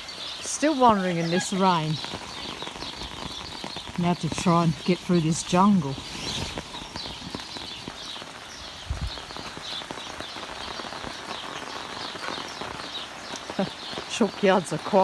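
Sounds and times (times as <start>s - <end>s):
footsteps through wet vegetation: 0.0s - 10.3s
rain pattering: 0.0s - 15.0s.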